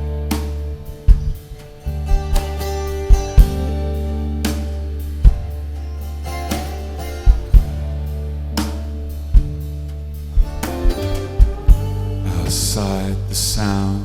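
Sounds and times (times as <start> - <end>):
band playing instrumental: 0.0 - 13.7.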